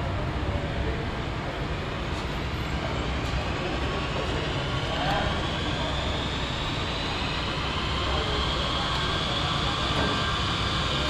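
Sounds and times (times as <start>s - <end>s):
steady machine noise: 2.4s - 11.0s.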